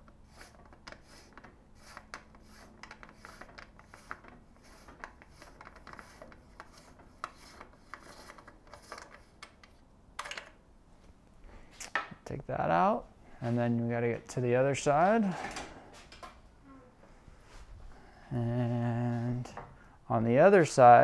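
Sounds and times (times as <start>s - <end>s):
metal rubbing and scraping: 0.3s - 9.5s.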